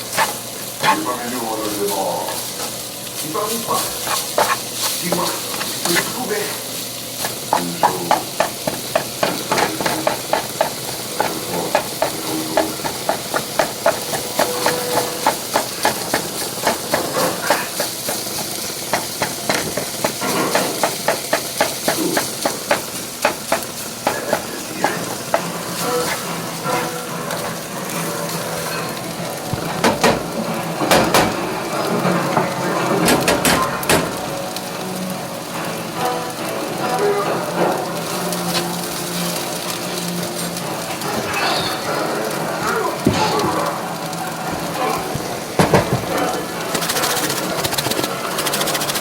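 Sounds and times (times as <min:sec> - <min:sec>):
cookware clattering: 0:00.0 - 0:34.4, 0:37.3 - 0:49.0
food sizzling in a pan: 0:00.0 - 0:49.0
utensil knocking against pan: 0:04.0 - 0:06.1, 0:07.2 - 0:26.2, 0:29.5 - 0:31.4, 0:33.0 - 0:34.2, 0:45.6 - 0:49.0.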